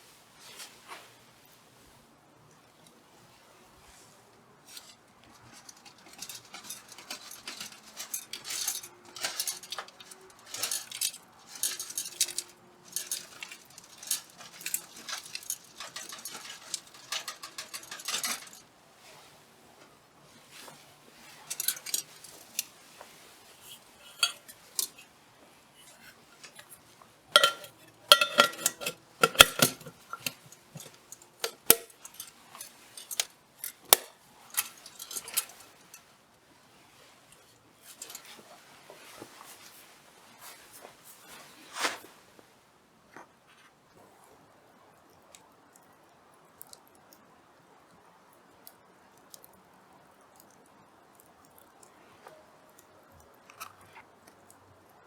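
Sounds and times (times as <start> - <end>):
small hard objects clinking: 4.6 - 19.2, 21.2 - 25.1, 25.8 - 36.1.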